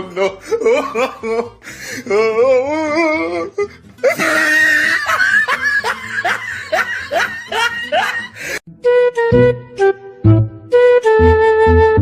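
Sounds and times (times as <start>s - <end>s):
person laughing: 0.0s - 8.6s.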